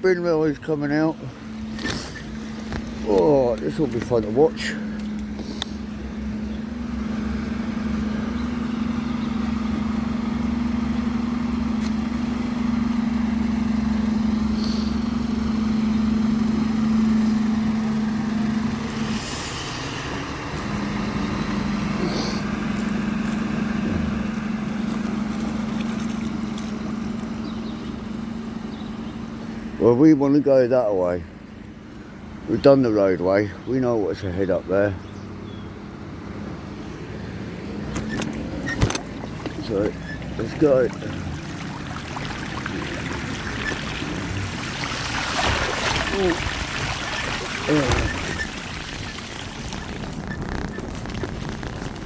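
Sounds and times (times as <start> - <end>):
water washing around truck: 0.0 - 34.9, 36.5 - 52.0
truck diesel engine running: 0.0 - 52.0
short hisses: 5.3 - 5.9, 14.5 - 15.1, 22.0 - 22.5.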